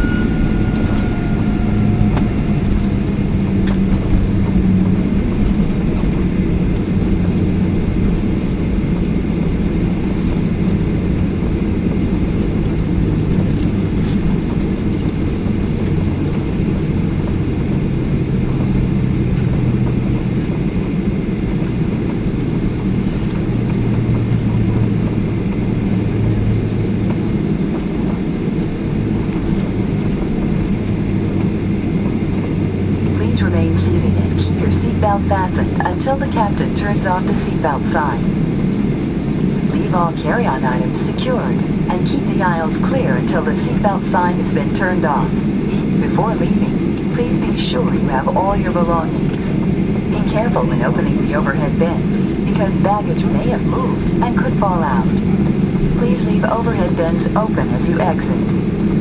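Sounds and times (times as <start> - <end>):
faint whine: 0.0 - 59.0
jet cabin low rumble: 0.0 - 59.0.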